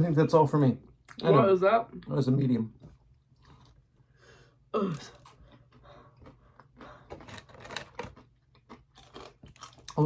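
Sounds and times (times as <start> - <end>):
person groaning: 4.8 - 5.1.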